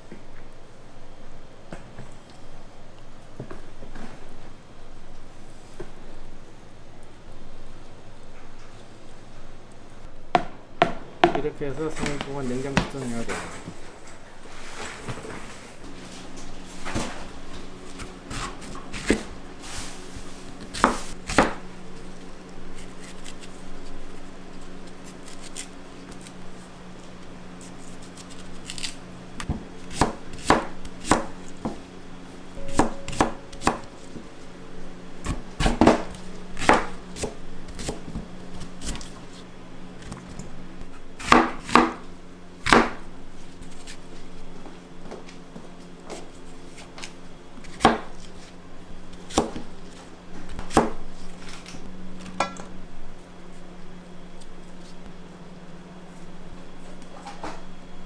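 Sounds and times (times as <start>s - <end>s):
steady low hum: 0.0s - 58.0s
knife chopping on cutting board: 20.7s - 21.6s, 29.4s - 31.8s, 32.6s - 33.9s, 35.2s - 38.2s, 41.2s - 42.0s, 42.6s - 43.0s, 49.3s - 49.6s, 50.6s - 51.0s.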